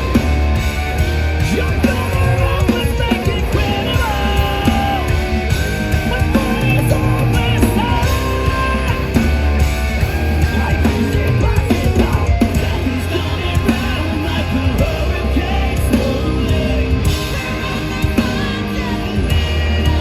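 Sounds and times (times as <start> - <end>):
metal band playing live: 0.0 - 20.0
person singing: 1.4 - 20.0.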